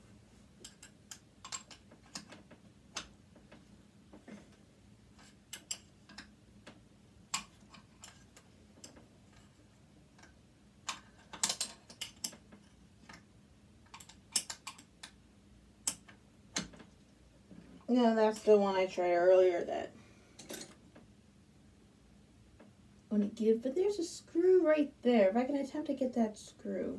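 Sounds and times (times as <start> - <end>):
metallic tool clicks and taps: 15.8 - 16.8.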